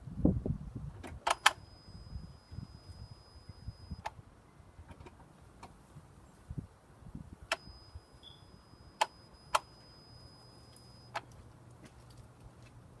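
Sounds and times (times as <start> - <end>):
faint high whine: 1.3 - 4.7, 7.3 - 11.3.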